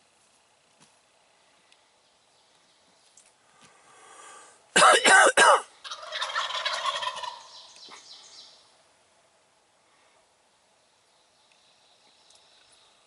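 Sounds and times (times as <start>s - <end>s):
turkey gobbling: 5.4s - 7.9s.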